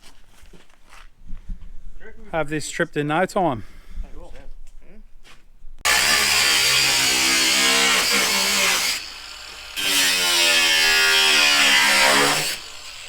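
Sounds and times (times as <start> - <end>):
power tool motor whirring: 5.9 - 13.0.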